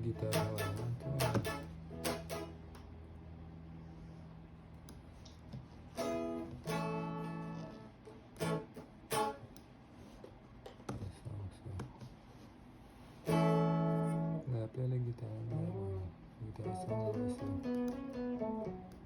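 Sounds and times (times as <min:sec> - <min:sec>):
guitar strummed chords: 0:00.0 - 0:02.8, 0:06.0 - 0:09.5, 0:13.2 - 0:14.6, 0:16.6 - 0:19.0
plucked guitar notes: 0:00.0 - 0:02.8, 0:06.0 - 0:09.5, 0:13.3 - 0:14.5, 0:16.6 - 0:19.0.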